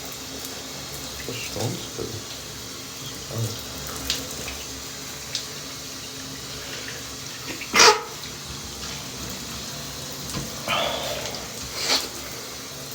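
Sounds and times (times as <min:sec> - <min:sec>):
shower water running: 0:00.0 - 0:12.9
man sneezing: 0:10.6 - 0:12.1.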